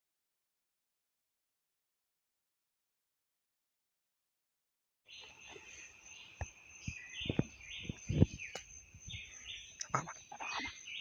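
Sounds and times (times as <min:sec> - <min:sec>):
birds chirping: 0:05.1 - 0:11.0
dull knocks and thumps: 0:06.4 - 0:09.2.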